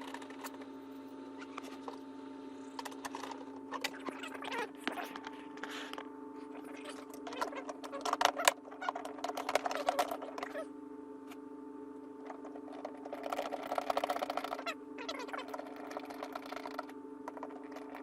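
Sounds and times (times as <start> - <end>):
clicks and scratches on plastic parts: 2.8 - 4.0, 7.1 - 10.6, 12.1 - 18.0.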